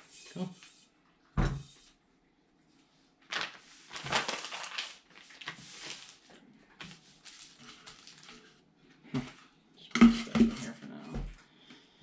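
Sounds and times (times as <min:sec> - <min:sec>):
packaging rustling and clattering: 0:03.2 - 0:08.6.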